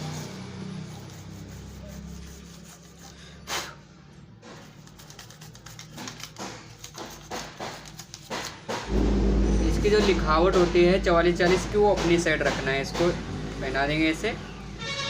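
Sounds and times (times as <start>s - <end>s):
brush scratching circuit board: 0.0s - 3.2s, 4.5s - 8.5s.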